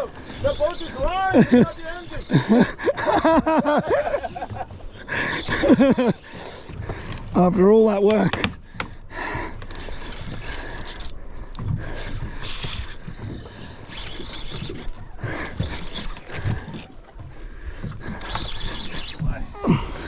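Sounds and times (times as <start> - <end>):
fishing reel clicking: 0.0 - 2.6, 9.6 - 13.2, 13.8 - 17.1, 17.8 - 19.2.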